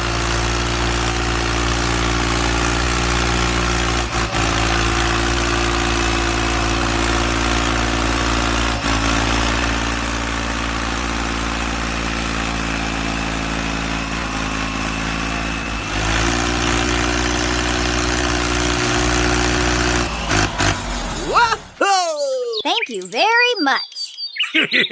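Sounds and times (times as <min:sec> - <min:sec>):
small engine idling: 0:00.0 - 0:21.8.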